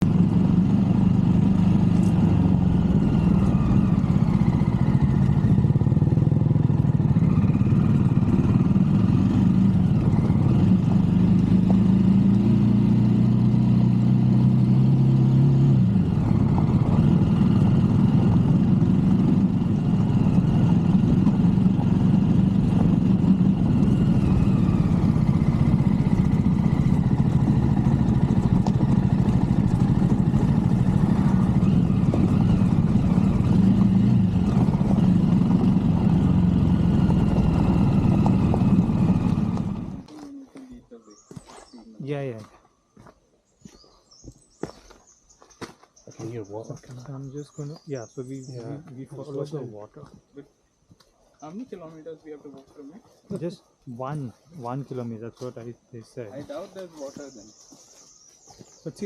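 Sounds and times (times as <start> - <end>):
motorcycle engine running: 0.0 - 41.4.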